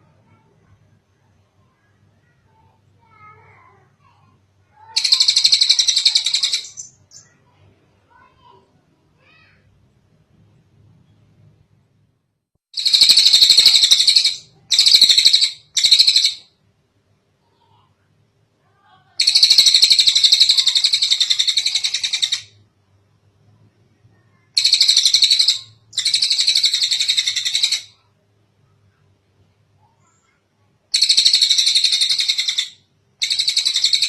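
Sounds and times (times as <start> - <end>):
kingfisher chattering trills: 5.0 - 7.2, 12.8 - 16.4, 19.2 - 22.4, 24.6 - 27.8, 31.0 - 32.6, 33.2 - 34.0.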